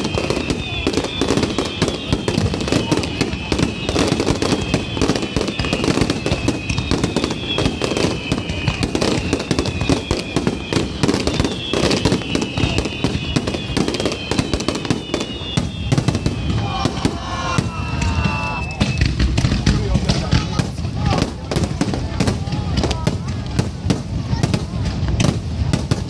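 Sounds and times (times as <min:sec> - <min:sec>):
fireworks bangs and crackling: 0:00.0 - 0:26.0
fireworks whistling: 0:00.0 - 0:26.0.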